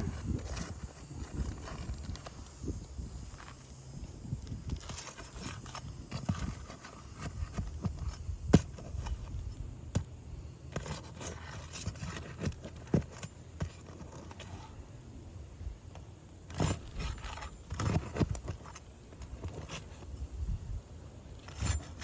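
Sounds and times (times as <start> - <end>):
knocks and scrapes on shingle roof: 0.0 - 3.7, 4.4 - 14.9, 15.9 - 20.3, 21.3 - 22.0.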